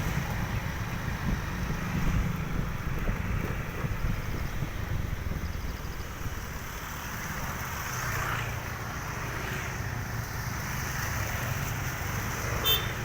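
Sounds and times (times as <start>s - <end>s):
wind buffeting microphone: 0.0s - 7.6s
low rumble of road traffic: 0.0s - 13.0s.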